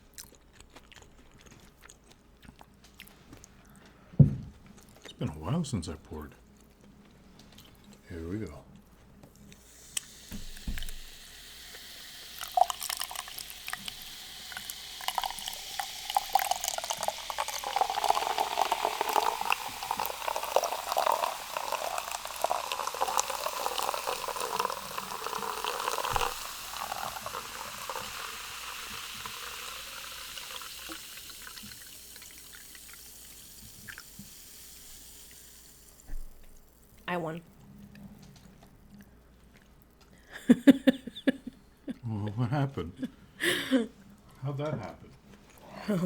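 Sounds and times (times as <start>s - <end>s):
liquid pouring: 9.6s - 37.1s.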